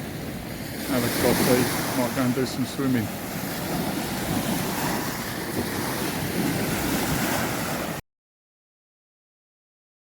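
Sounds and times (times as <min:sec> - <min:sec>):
surf washing onto beach: 0:00.0 - 0:08.0
wind buffeting microphone: 0:00.0 - 0:08.0.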